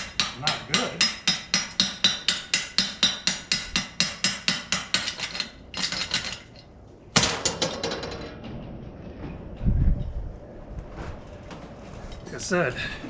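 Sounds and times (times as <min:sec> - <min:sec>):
hammer tapping steel: 0:00.0 - 0:06.3.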